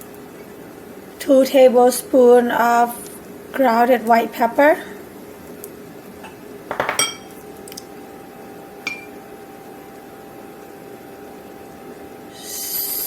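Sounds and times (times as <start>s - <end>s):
utensils clinking against a dish: 6.2s - 7.4s, 8.9s - 9.2s.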